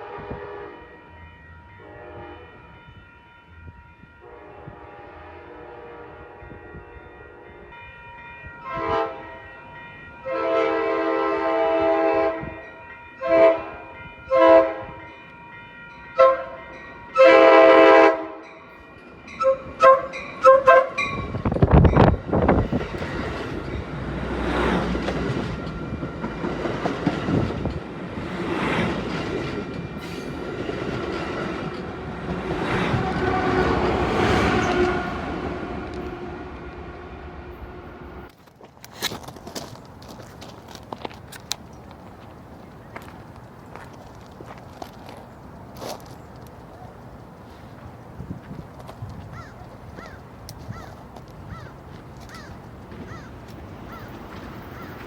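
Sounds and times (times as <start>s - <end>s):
train air horn blasts: 0.0s - 2.9s, 4.1s - 7.8s, 8.6s - 9.6s, 10.2s - 15.1s, 16.2s - 18.7s, 19.4s - 22.6s, 31.8s - 38.3s
train rumbling past: 0.0s - 38.4s, 39.4s - 55.0s
wheels clacking over rail joints: 18.9s - 37.3s, 38.2s - 55.0s.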